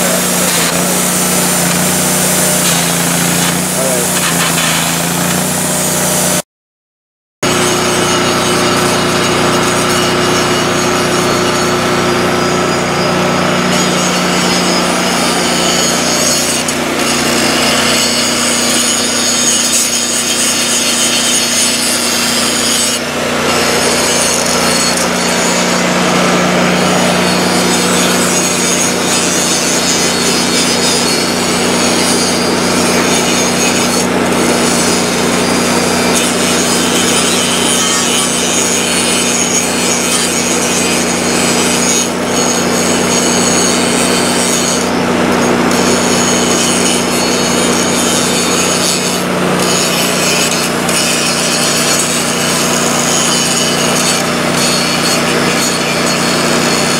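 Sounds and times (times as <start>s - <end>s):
angle grinder grinding metal: 0.0s - 6.4s, 7.4s - 56.9s.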